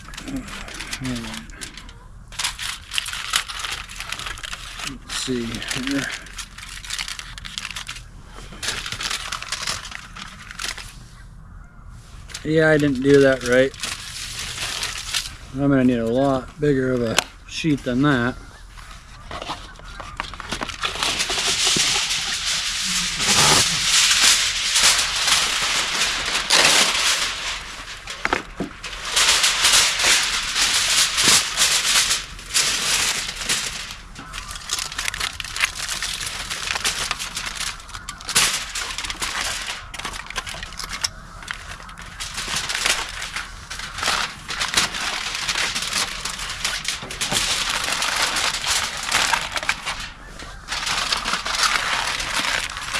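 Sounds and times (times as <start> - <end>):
aluminum foil crinkling: 0.0 - 52.9.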